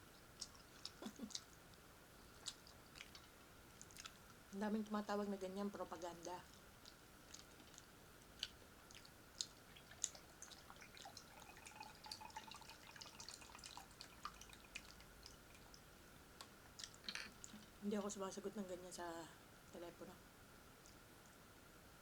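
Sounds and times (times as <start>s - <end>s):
person chewing food: 0.1s - 4.4s, 6.4s - 15.8s, 16.7s - 17.7s.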